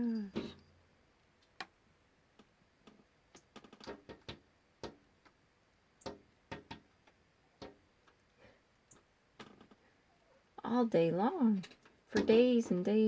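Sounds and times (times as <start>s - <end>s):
bird tapping beak on glass: 3.6s - 5.0s, 6.0s - 6.9s, 7.6s - 7.8s.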